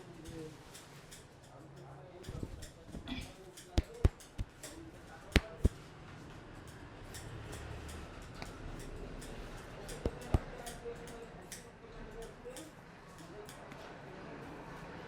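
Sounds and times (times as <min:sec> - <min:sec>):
hands cracking during head massage: 0:02.3 - 0:05.8, 0:09.9 - 0:10.8
hands rustling through hair: 0:03.8 - 0:04.7.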